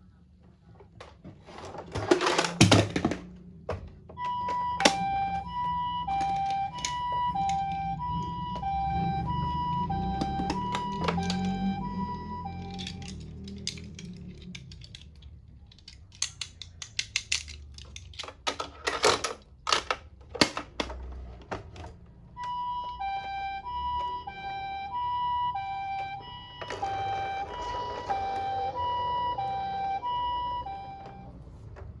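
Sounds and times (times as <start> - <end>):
toy siren two-tone wail: 4.2 - 14.1, 22.3 - 31.5
sharp clicks and clatters: 12.5 - 22.0.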